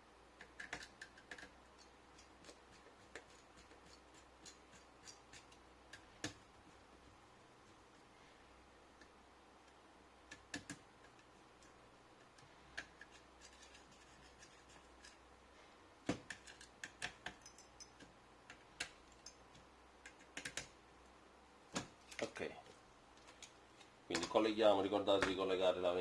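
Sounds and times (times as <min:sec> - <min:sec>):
small parts clicking: 0:00.4 - 0:06.4, 0:16.1 - 0:20.8.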